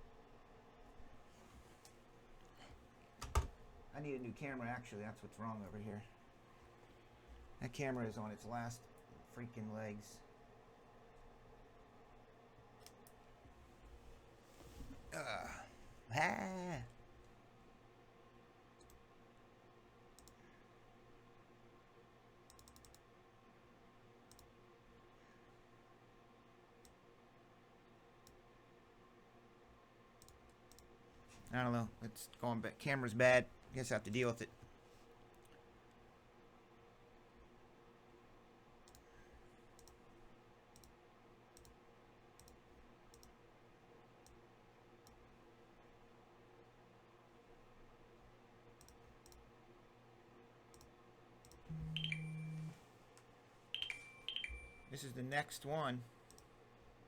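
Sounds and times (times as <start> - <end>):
faint clicks: 20.2 - 20.4, 22.5 - 23.0, 24.3 - 24.5, 30.2 - 30.9, 38.8 - 39.1, 39.8 - 40.0, 40.7 - 41.0, 42.4 - 43.3, 48.8 - 49.4, 50.7 - 52.2, 56.3 - 56.5
low hum: 51.6 - 52.8.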